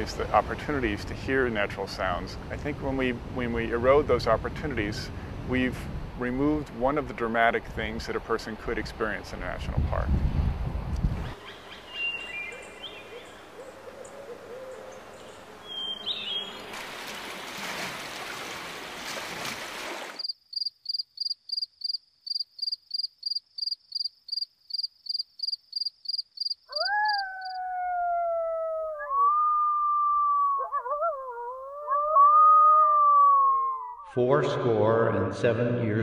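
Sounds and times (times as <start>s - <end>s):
canid howling: 26.7s - 34.1s.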